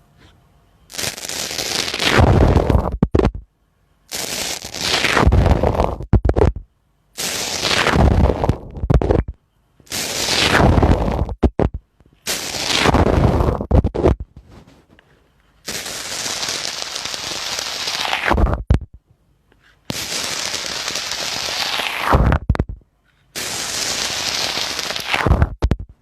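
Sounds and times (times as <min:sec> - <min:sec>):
slime crackling and popping: 0:01.9 - 0:03.4, 0:04.7 - 0:06.6, 0:19.9 - 0:22.8, 0:23.4 - 0:26.0.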